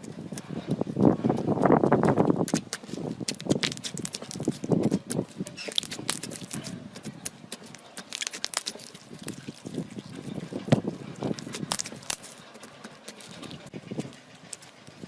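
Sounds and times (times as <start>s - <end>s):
slime squishing and popping: 3.3s - 9.9s, 10.7s - 12.3s.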